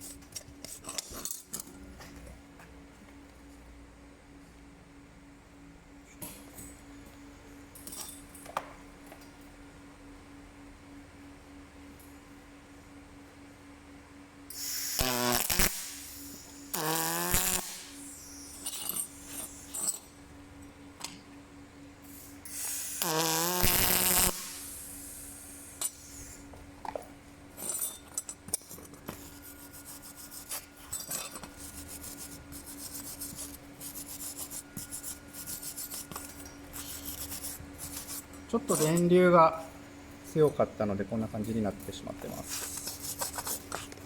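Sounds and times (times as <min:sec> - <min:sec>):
low electrical hum: 0:00.0 - 0:44.0
welding arc bursts: 0:14.5 - 0:20.0, 0:22.2 - 0:26.4.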